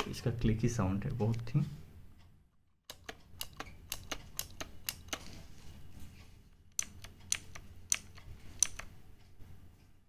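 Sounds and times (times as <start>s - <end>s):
mechanical keyboard clicking: 2.9s - 5.3s, 6.8s - 8.9s.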